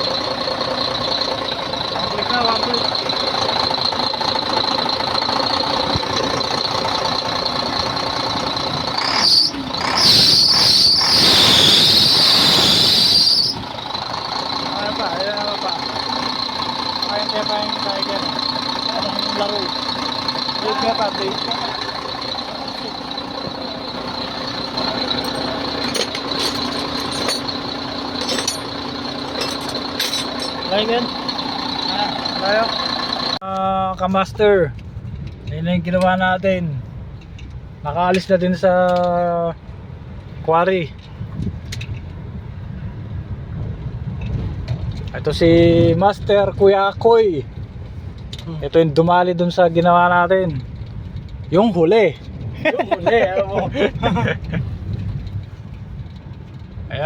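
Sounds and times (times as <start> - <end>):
diesel truck engine running: 0.0 - 57.0
high-pitched hissing squeal: 9.0 - 13.8.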